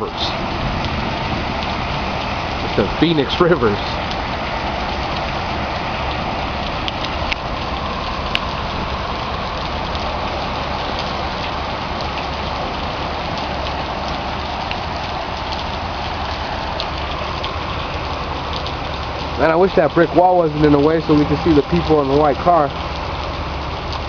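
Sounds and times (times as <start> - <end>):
heavy rain falling: 0.0 - 24.0
raindrops ticking nearby: 0.0 - 24.0.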